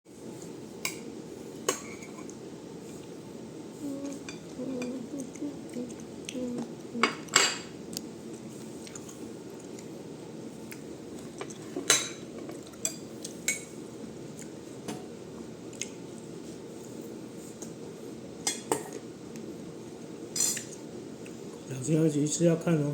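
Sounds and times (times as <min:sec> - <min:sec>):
cutlery clinking against dishes: 0:18.4 - 0:19.0, 0:20.4 - 0:20.8.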